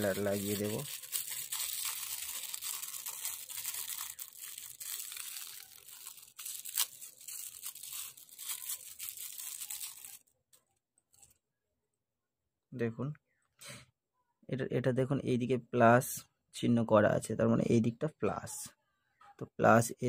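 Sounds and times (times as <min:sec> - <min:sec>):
plastic packaging crinkling and tearing: 0:00.0 - 0:10.3.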